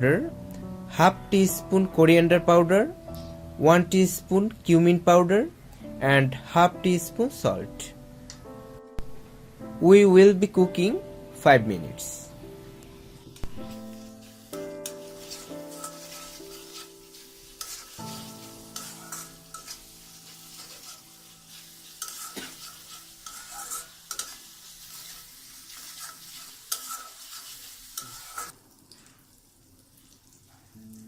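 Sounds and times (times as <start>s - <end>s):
paste sizzling in oil: 13.4s - 30.9s
utensil scraping a pan: 14.0s - 28.5s.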